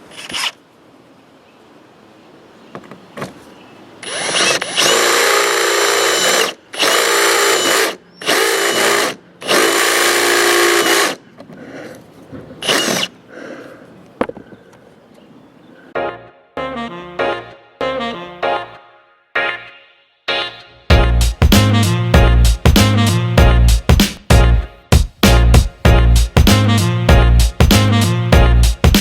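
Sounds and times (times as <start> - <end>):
power drill drilling sheet metal: 4.0 - 11.2, 12.6 - 13.1.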